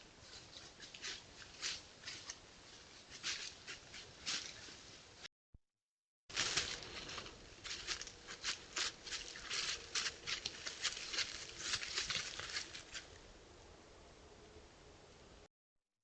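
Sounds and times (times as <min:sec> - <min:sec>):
rustling crackling sounds: 0:00.0 - 0:05.3, 0:06.3 - 0:13.3.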